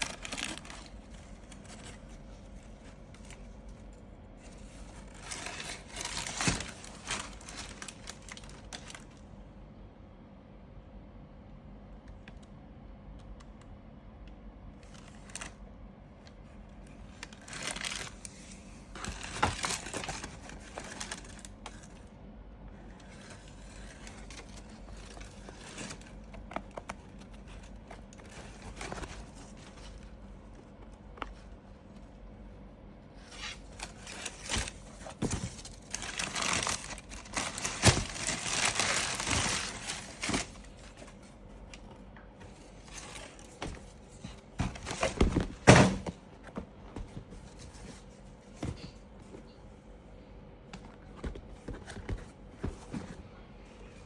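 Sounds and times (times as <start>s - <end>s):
paper crinkling and scraping: 0.0s - 9.2s, 17.0s - 22.0s, 22.9s - 32.0s, 33.2s - 49.5s, 50.8s - 54.0s.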